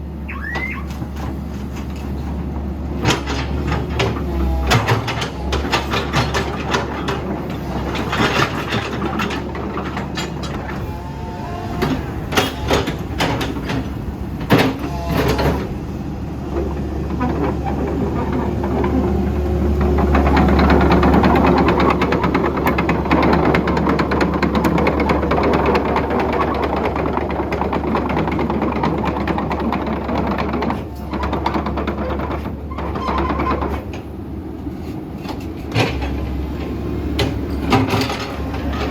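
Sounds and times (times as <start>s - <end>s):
excavator diesel engine running: 0.0s - 38.9s
metal clanks and knocks: 0.3s - 10.9s, 11.7s - 15.8s, 34.8s - 38.9s.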